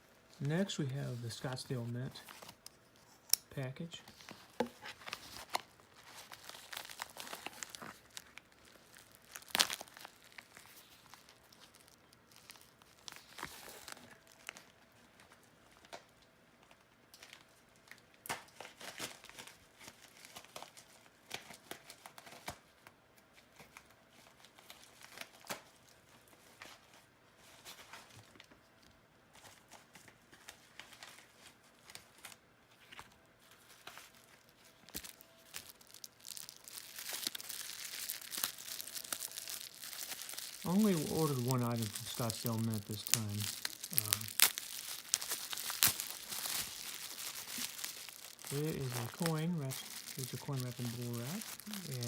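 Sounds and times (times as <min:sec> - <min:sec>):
packing material crinkling: 0:00.3 - 0:28.6, 0:29.3 - 0:52.0
packaging tearing: 0:04.1 - 0:14.7, 0:33.8 - 0:52.0.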